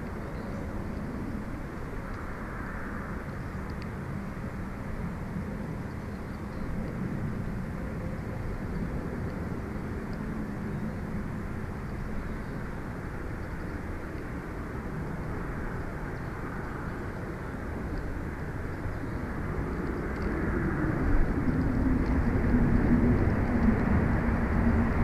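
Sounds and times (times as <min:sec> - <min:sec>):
low rumbling noise: 0:00.0 - 0:25.0.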